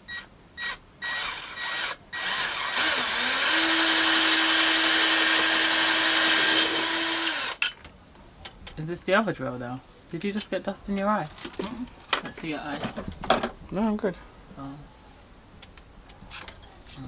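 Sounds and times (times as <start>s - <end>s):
power drill boring: 0.6s - 7.7s.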